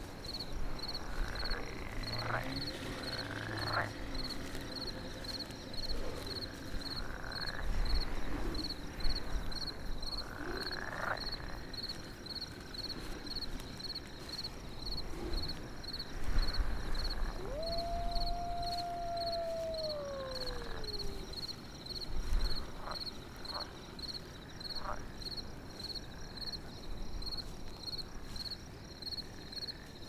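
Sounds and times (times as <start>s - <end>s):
insect chirping: 0.2s - 26.5s
frog-like croaks: 1.0s - 5.2s, 10.2s - 11.7s, 17.0s - 21.5s
long high howl: 16.9s - 21.7s
short rising calls: 17.3s - 21.4s.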